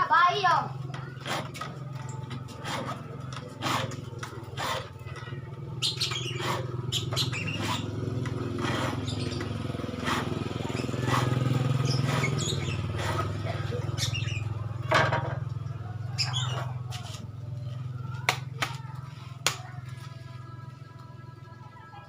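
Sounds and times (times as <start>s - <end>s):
low engine hum: 1.7s - 22.0s
birds chirping: 3.6s - 14.9s, 15.6s - 18.2s.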